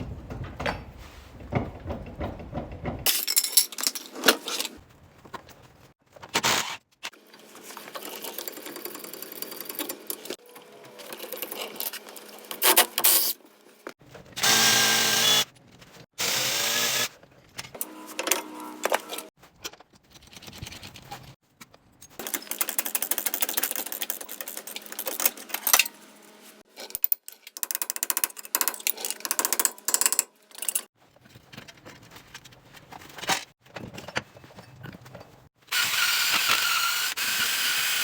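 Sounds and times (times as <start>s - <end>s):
metal parts clanking: 0.0s - 4.8s, 22.0s - 26.1s, 26.7s - 35.5s
loud motor-driven tool: 14.4s - 15.4s, 16.2s - 17.1s.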